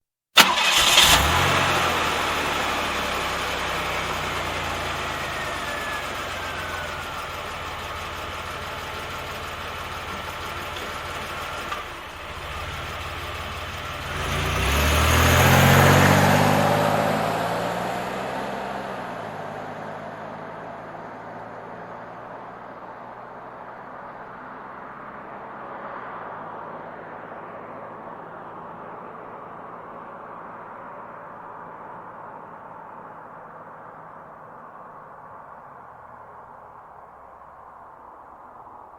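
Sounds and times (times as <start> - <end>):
engine revving: 0.4 - 20.6
car engine starting and idling: 0.4 - 26.3.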